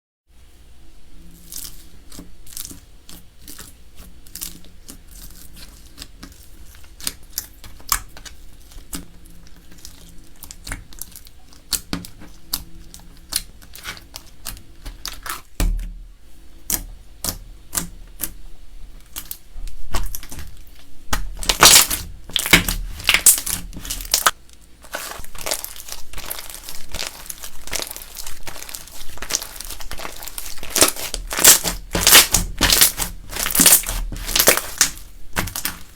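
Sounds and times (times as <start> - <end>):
slime squishing with crackling pops: 1.5 - 15.9, 19.0 - 35.9.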